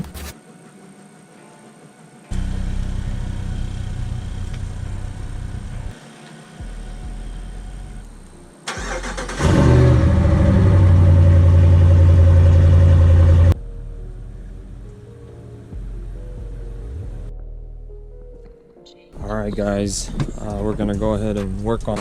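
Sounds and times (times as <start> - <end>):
vehicle engine running: 2.3 - 6.0, 6.6 - 13.6
engine starting: 8.7 - 10.9.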